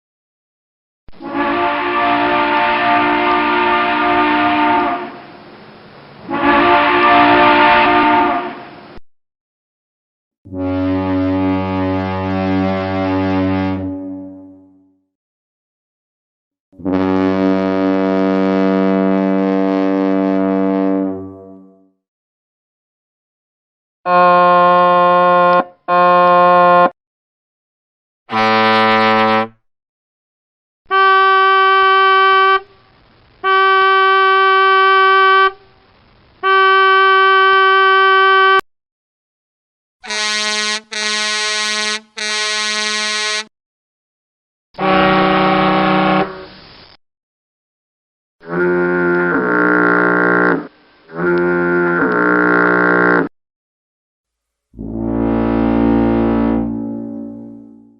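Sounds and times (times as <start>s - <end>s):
ship's horn blast: 1.1s - 5.4s, 6.2s - 9.0s, 10.5s - 15.0s, 16.8s - 21.9s, 24.1s - 27.0s, 28.3s - 29.6s, 30.9s - 32.7s, 33.4s - 35.7s, 36.4s - 38.6s, 40.0s - 43.5s, 44.8s - 46.6s, 48.4s - 53.3s, 54.8s - 57.9s.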